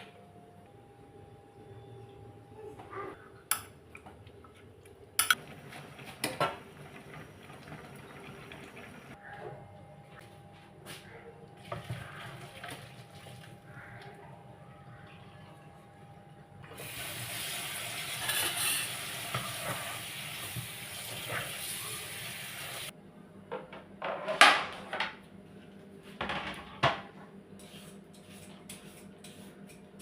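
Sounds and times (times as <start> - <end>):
food sizzling in a pan: 16.8 - 22.9
utensils and dishes clinking: 18.0 - 20.0.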